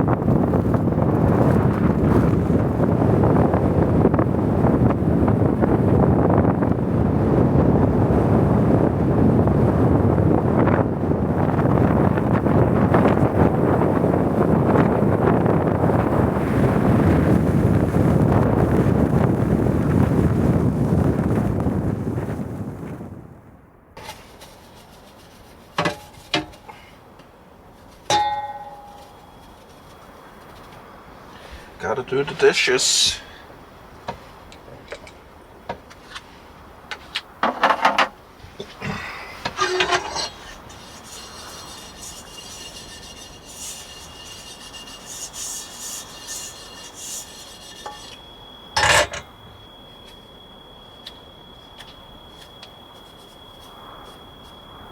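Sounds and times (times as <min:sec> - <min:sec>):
cookware clanging: 0:28.0 - 0:29.5, 0:39.5 - 0:48.2, 0:48.8 - 0:49.3
dishes clinking: 0:28.0 - 0:29.5, 0:39.4 - 0:48.2, 0:48.8 - 0:49.4.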